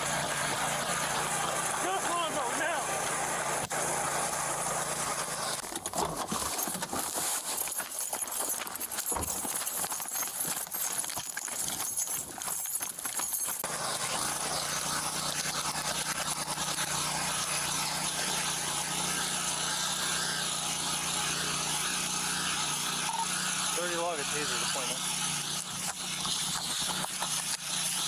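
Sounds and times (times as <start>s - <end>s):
vehicle engine hum: 0.0s - 28.0s
camera jostling thumps and rustles: 5.6s - 13.6s
running footsteps: 5.6s - 13.6s, 25.0s - 28.0s.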